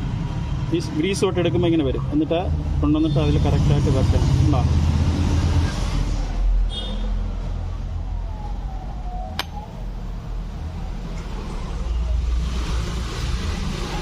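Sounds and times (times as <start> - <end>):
road traffic rumble: 0.0 - 14.0
sharp click: 9.3 - 9.6.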